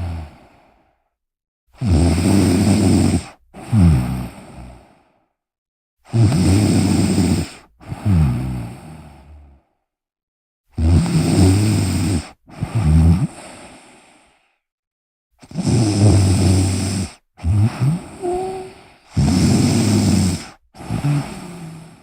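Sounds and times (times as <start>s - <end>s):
person snoring loudly: 1.8s - 4.6s, 15.4s - 22.0s.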